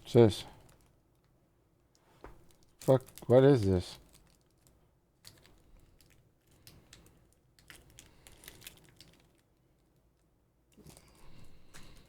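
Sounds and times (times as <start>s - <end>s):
packaging rustling: 2.4s - 9.4s.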